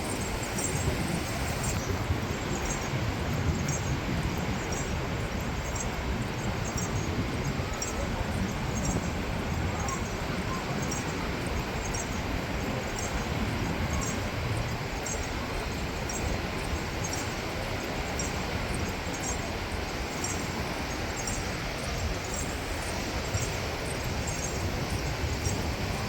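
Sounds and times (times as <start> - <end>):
wind: 0.0 - 26.0.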